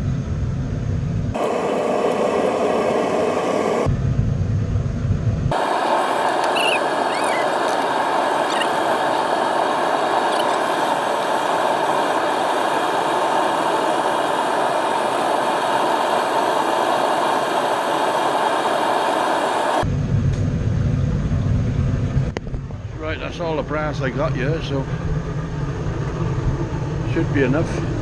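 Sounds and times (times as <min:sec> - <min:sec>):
faint high squeaks: 0:06.2 - 0:08.8.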